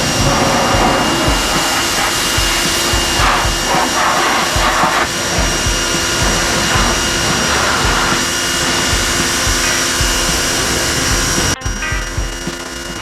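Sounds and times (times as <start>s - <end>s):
pressure washer jet hissing: 0.0s - 13.0s.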